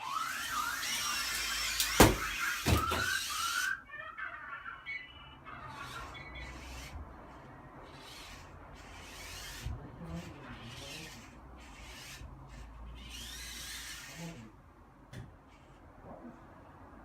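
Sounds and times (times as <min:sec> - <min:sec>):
small drone propellers whirring: 0:00.0 - 0:03.8, 0:05.8 - 0:14.5.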